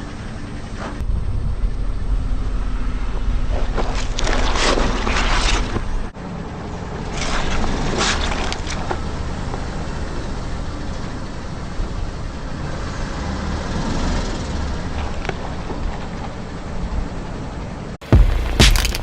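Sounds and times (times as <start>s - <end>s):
tyres and engine rumble: 0.0s - 19.0s
car crushing objects: 18.0s - 19.0s.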